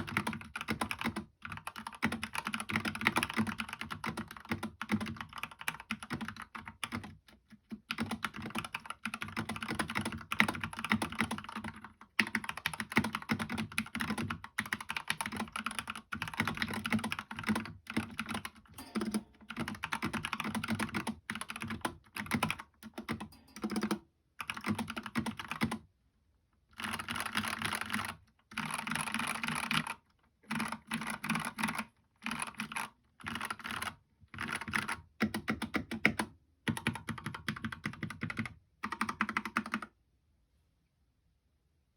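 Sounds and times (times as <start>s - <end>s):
mechanical keyboard typing: 0.0s - 25.9s, 26.7s - 39.9s.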